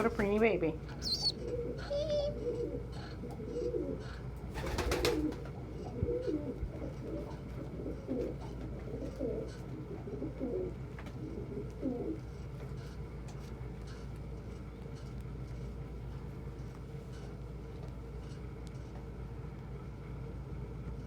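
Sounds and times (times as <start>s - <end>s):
rustling: 0.0s - 1.3s
pigeons cooing: 0.0s - 13.1s.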